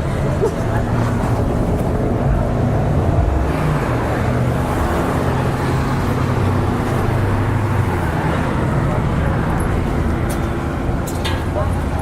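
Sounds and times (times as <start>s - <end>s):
car engines and road noise: 0.0s - 12.0s.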